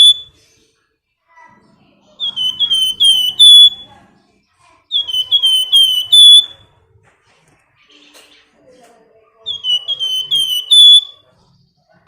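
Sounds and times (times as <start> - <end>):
bird whistling clear notes: 2.2 - 3.9, 5.0 - 6.6, 9.5 - 11.2.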